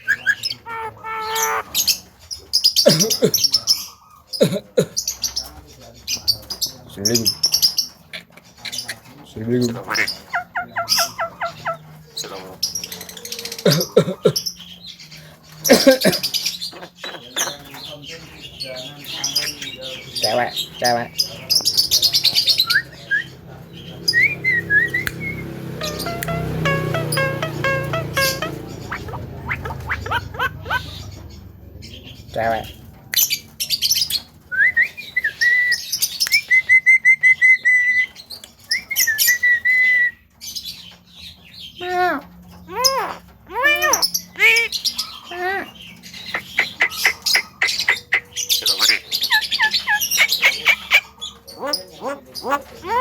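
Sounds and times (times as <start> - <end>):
myna calls and harsh chatter: 0.0 - 34.4, 35.0 - 53.0
bird whistles: 24.1 - 30.7.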